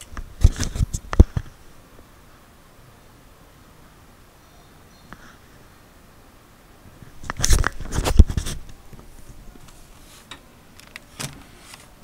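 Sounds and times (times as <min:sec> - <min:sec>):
handling noise at microphone: 0:00.0 - 0:01.6, 0:07.0 - 0:12.0.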